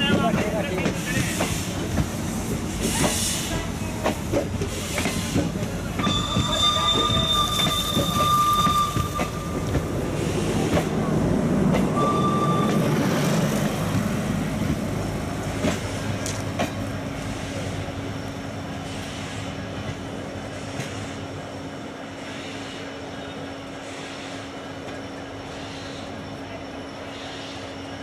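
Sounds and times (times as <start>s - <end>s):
train wheels rumbling on rails: 0.0s - 28.0s
high steady tone: 11.9s - 13.1s.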